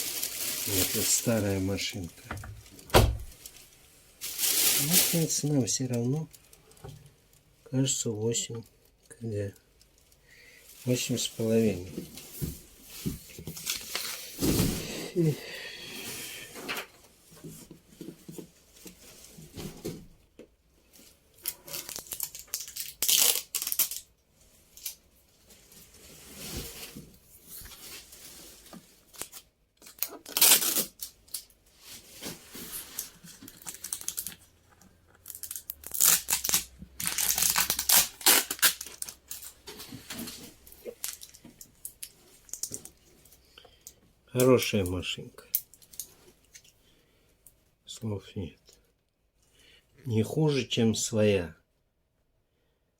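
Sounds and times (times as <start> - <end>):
packaging tearing and crumpling: 0.0 - 1.8, 21.4 - 24.1, 29.1 - 31.5, 32.7 - 34.5, 35.2 - 39.6, 40.7 - 43.0.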